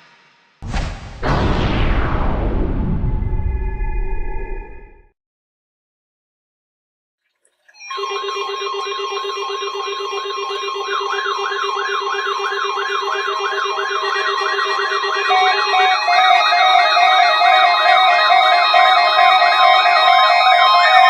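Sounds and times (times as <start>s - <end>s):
warbling alarm tones: 7.9s - 21.0s.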